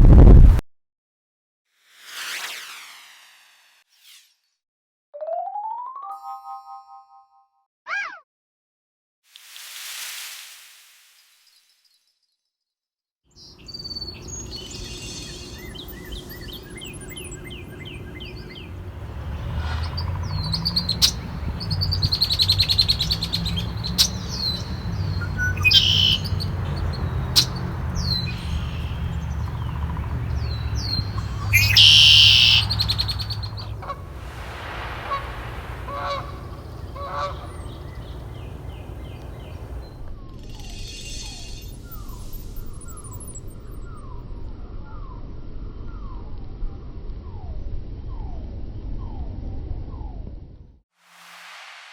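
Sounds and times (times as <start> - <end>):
low rumble: 0.0 - 0.6, 14.2 - 31.8, 32.6 - 40.2
birds chirping and trilling: 13.4 - 44.2.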